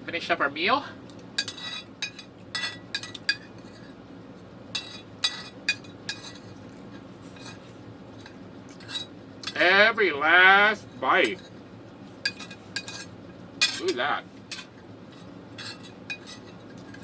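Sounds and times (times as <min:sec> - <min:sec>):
cutlery clinking on a plate: 0:01.4 - 0:03.6, 0:12.3 - 0:14.7, 0:15.6 - 0:17.0.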